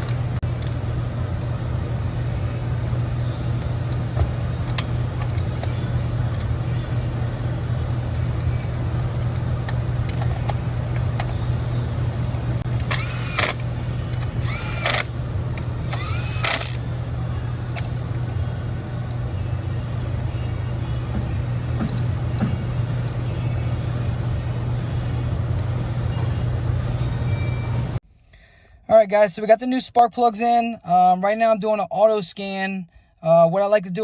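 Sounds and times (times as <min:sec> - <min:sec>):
steady low hum: 0:00.0 - 0:28.0
small power tool whirring: 0:12.2 - 0:16.9.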